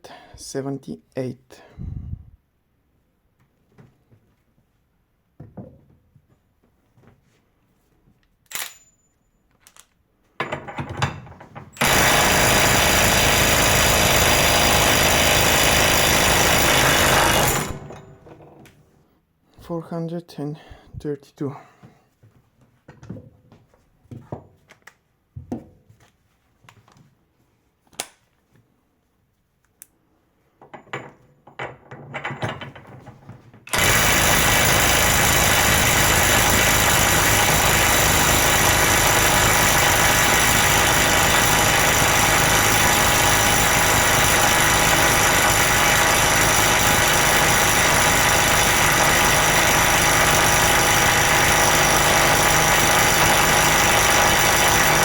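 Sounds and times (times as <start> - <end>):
cordless impact wrench hammering: 11.7 - 18.1, 33.7 - 55.0.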